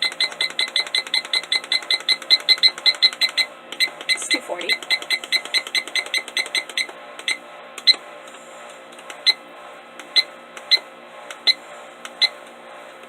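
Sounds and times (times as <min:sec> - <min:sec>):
alarm clock beeps: 0:00.0 - 0:07.4.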